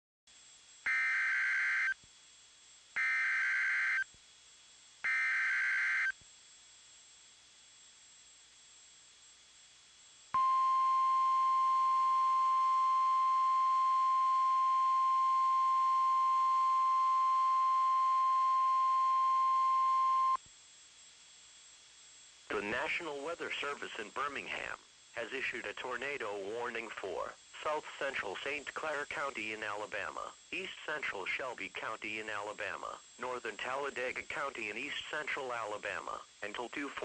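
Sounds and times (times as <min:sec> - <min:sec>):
steady single-pitched alarm tone: 0:00.9 - 0:02.0, 0:03.0 - 0:04.1, 0:05.0 - 0:06.2, 0:10.4 - 0:20.4.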